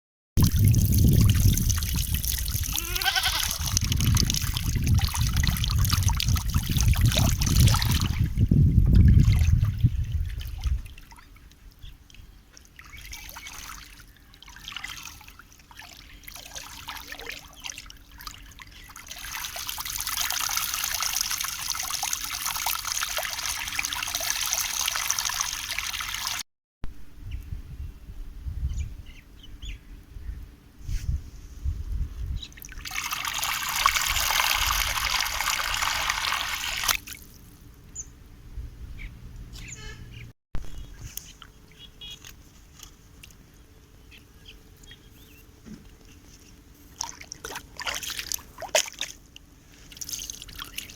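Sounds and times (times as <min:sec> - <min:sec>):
running water trickling and splashing: 0:00.4 - 0:26.4, 0:32.6 - 0:37.5, 0:46.9 - 0:50.9.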